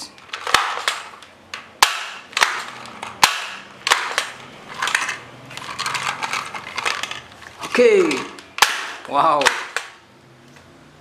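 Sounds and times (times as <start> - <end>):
plastic mechanism clicks and rattle: 0.2 - 10.0
toy gun snapping shots: 0.4 - 4.4, 8.0 - 10.0.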